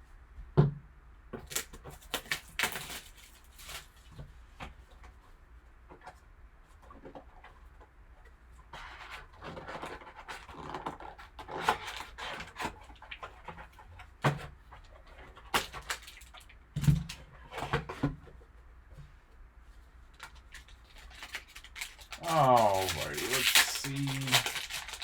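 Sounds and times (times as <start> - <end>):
plastic wrap and cardboard crinkling: 1.4 - 4.3, 15.0 - 17.6, 20.0 - 25.0.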